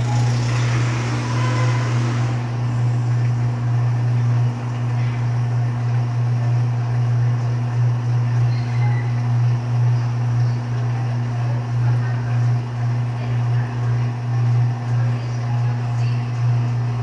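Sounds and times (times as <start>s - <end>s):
washing machine motor hum: 0.0s - 17.0s.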